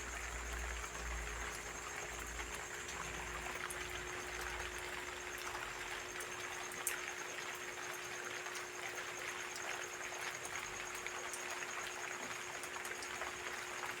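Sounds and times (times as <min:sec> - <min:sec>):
faint steady hum: 0:00.0 - 0:14.0
rain pattering: 0:00.0 - 0:14.0.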